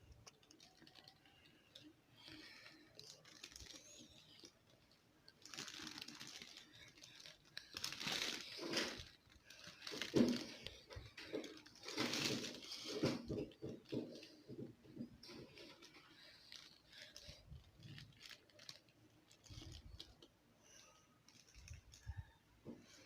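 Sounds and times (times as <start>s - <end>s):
crinkling rustling handling noise: 0.0s - 23.0s.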